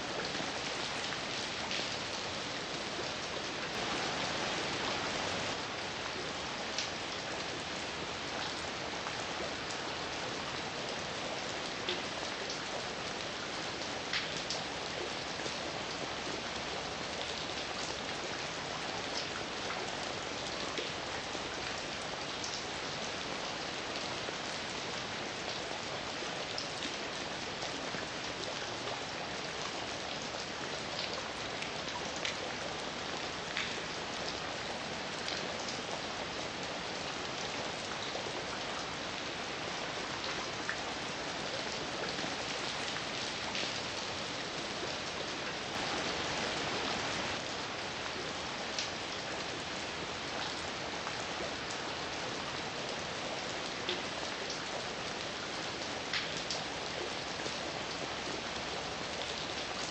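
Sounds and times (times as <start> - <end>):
heavy rain falling: 0.0 - 58.0
loud raindrops: 3.6 - 6.1, 45.5 - 48.0.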